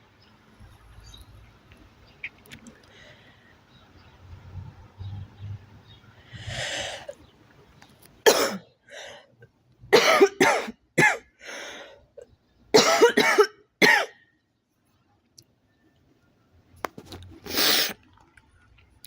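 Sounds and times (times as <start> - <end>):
girl coughing: 8.3 - 8.6, 10.0 - 11.3, 12.8 - 14.1.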